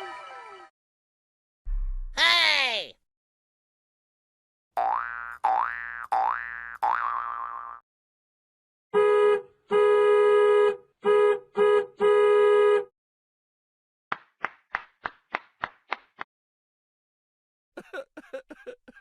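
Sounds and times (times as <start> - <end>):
comedy horn honks: 9.0 - 12.9.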